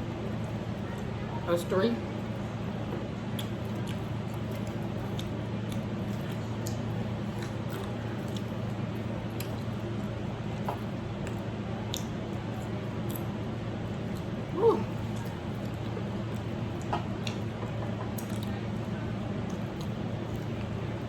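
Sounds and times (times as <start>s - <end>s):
low background hum: 0.0s - 21.0s
mouth clicks and smacks: 3.3s - 8.5s, 11.3s - 12.2s
wet chewing: 3.3s - 13.3s, 13.9s - 21.0s.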